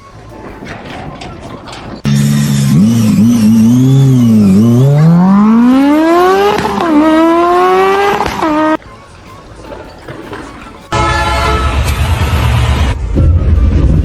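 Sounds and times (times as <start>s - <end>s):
engine revving: 2.0s - 8.8s.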